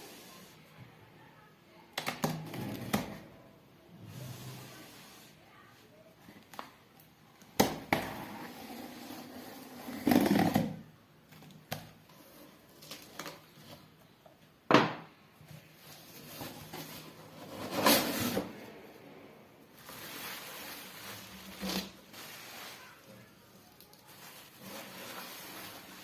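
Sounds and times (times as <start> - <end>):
packaging rustling: 19.7 - 26.0.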